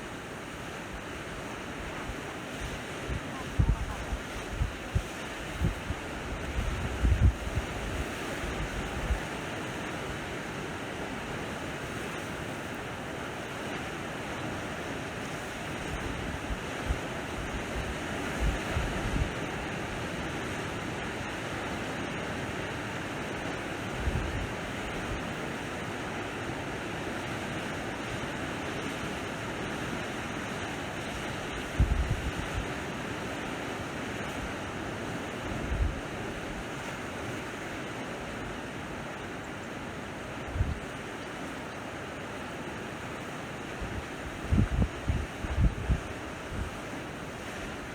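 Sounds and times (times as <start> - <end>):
sea waves washing on shore: 0.0 - 47.9
wind buffeting microphone: 1.6 - 9.3, 31.7 - 32.7, 35.5 - 36.6, 40.4 - 40.9, 43.8 - 47.9.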